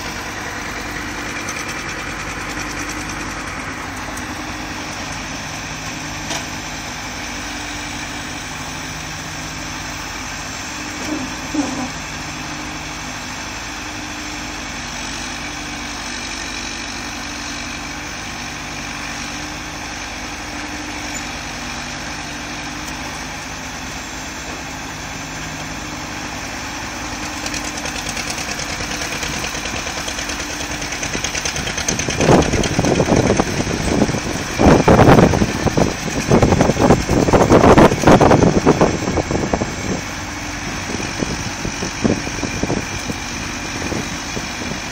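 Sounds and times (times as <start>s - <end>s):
loud engine bursts: 0.0s - 16.6s
diesel engine idling: 0.0s - 44.9s.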